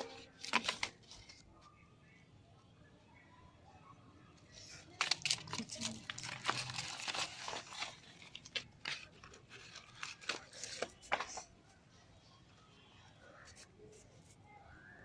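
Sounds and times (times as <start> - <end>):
packaging wrappers crinkling: 0.0 - 1.4, 4.5 - 11.5.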